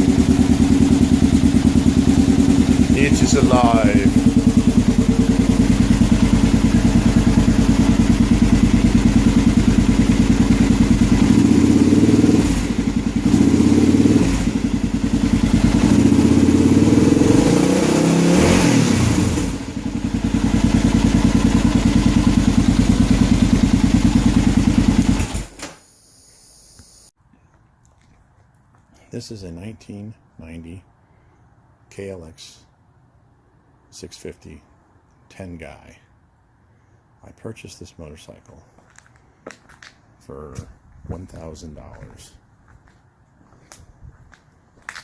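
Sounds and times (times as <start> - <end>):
motorcycle engine idling: 0.0 - 17.4, 18.1 - 25.5
engine revving: 0.0 - 25.6.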